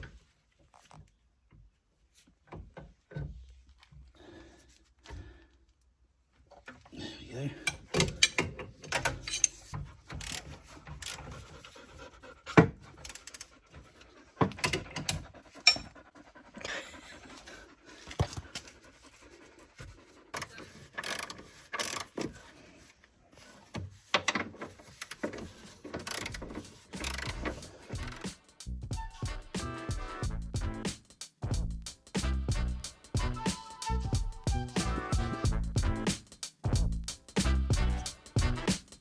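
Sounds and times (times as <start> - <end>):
hand tools clicking and knocking: 7.5 - 16.0, 19.8 - 22.6, 23.6 - 28.3.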